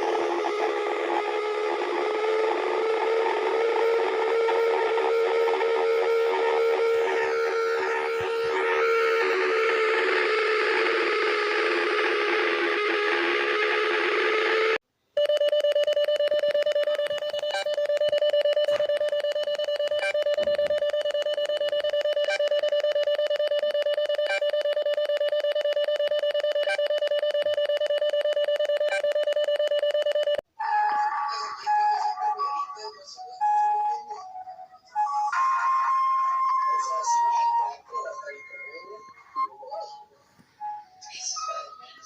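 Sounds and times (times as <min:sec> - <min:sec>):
noisy wavering sound: 0:00.0 - 0:14.8
buzzy electronic alarm tone: 0:00.0 - 0:30.4.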